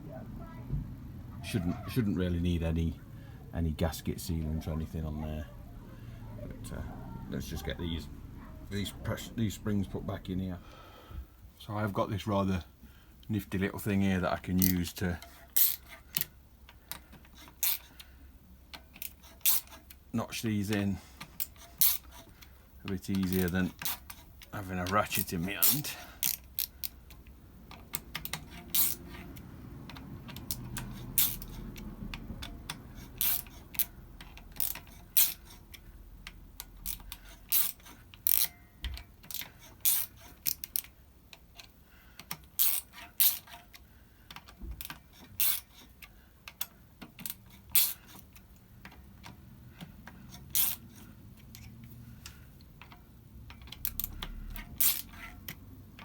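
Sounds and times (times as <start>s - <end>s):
hand tool metallic clicks: 52.7s - 55.6s.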